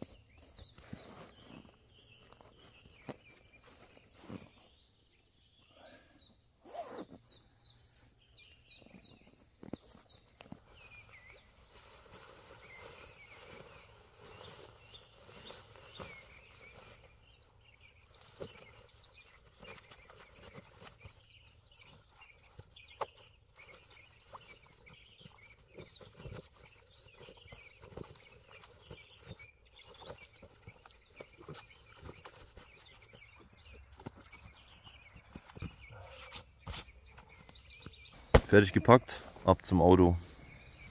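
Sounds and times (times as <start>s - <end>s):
birds chirping: 0.0s - 40.9s
camping gear knocks and clicks: 8.6s - 11.4s.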